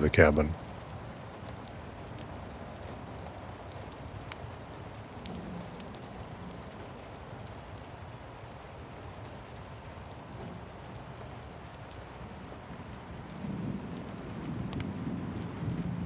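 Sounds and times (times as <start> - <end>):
steady rain falling: 0.0 - 16.0.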